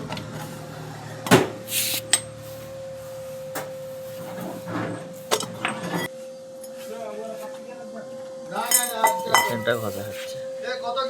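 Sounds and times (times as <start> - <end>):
electric wheel drive whining: 0.0 - 1.7.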